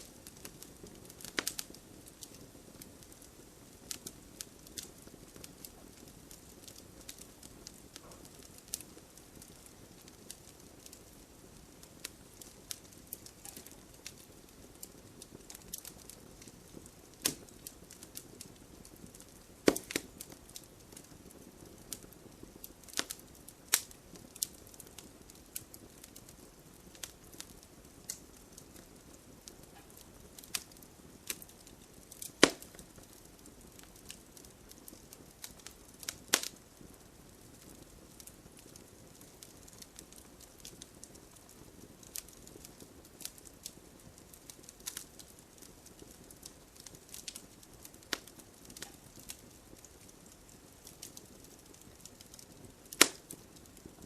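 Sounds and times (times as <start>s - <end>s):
low steady hiss: 0.0s - 54.0s
wood fire crackling: 0.0s - 54.0s
sharp pops and snaps: 1.2s - 2.4s, 12.4s - 14.2s, 15.4s - 18.5s, 19.2s - 21.1s, 22.8s - 25.0s, 29.7s - 33.2s, 35.4s - 36.6s, 46.8s - 49.9s, 50.9s - 53.4s.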